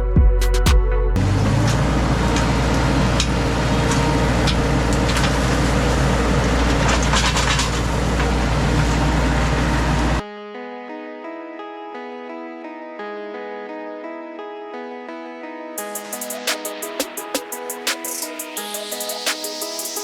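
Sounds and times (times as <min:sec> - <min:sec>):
engine rumbling: 0:01.2 - 0:10.2.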